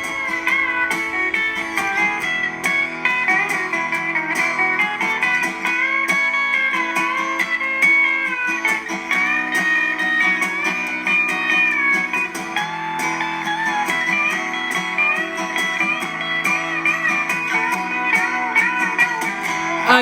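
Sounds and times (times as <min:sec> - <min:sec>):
guitar music: 0:00.0 - 0:20.0.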